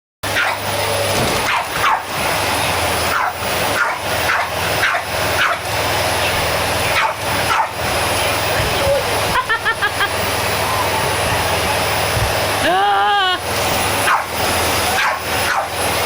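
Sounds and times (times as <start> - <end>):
dog barking: 0.3 - 0.7, 1.4 - 2.1, 3.1 - 5.7, 6.9 - 7.8, 14.0 - 15.8
vacuum cleaner humming: 0.3 - 16.0.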